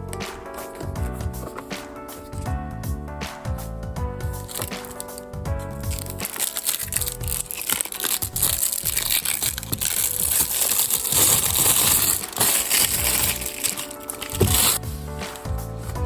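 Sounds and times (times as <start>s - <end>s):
background music: 0.0s - 16.0s
packaging crinkling: 4.4s - 14.9s.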